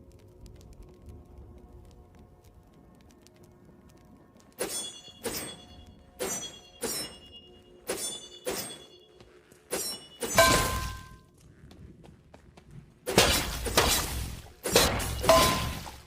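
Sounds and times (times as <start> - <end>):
sword clashing metal strikes: 6.2 - 7.3, 7.9 - 8.9, 9.7 - 11.1, 13.1 - 16.0.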